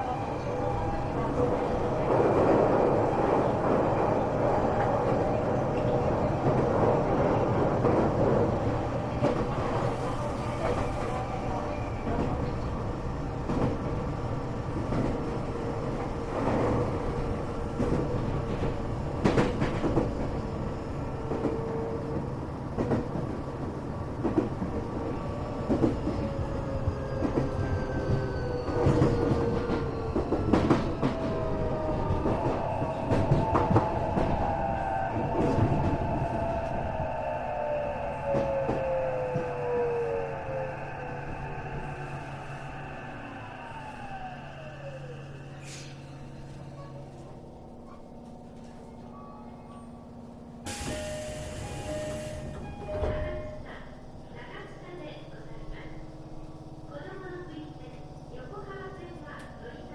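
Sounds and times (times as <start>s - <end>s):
train rumbling: 0.0s - 59.9s.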